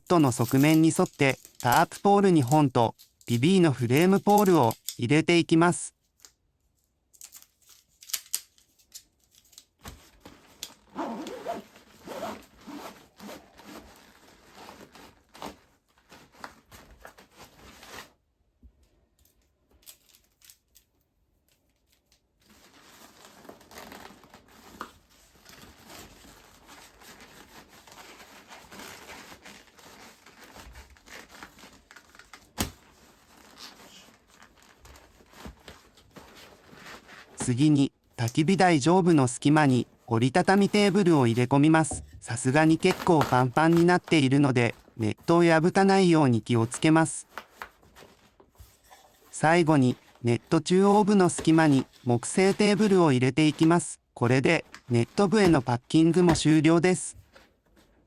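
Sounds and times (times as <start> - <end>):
backpack fabric rustling and crinkling: 10.0 - 18.0, 22.5 - 37.4.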